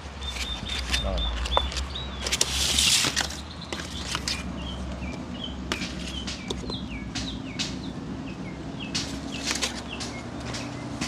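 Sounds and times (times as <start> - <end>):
bird chirping: 0.0 - 11.0
sharp clicks: 0.4 - 8.0.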